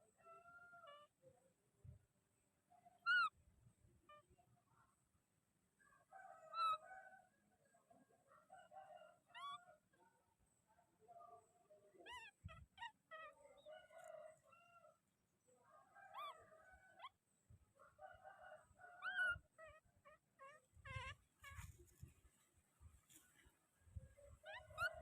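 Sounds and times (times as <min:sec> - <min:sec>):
baby monkey squeaking: 0:03.1 - 0:03.3, 0:12.1 - 0:13.4, 0:19.0 - 0:21.8, 0:24.4 - 0:25.0.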